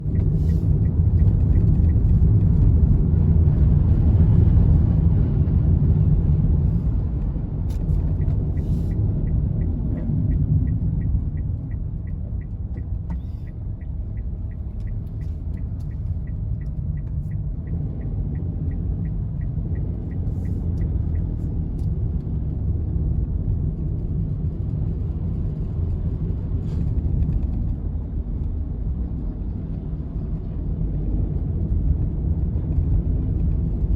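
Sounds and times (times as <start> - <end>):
vehicle rumble on road: 0.0 - 33.9
faint regular ticking: 7.9 - 21.4.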